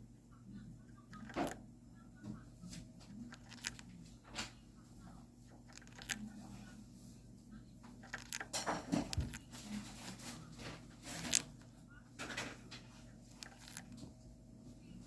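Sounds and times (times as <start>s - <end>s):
parrot rasping and clicking: 1.2s - 1.6s, 3.3s - 3.9s, 5.6s - 6.3s, 7.9s - 9.7s, 10.6s - 11.7s, 12.3s - 14.1s.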